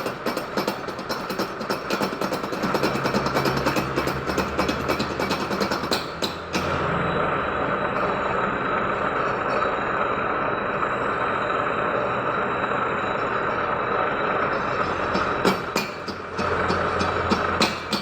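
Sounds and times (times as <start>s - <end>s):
workshop machine running: 0.0s - 18.0s
faint high whine: 6.7s - 15.4s.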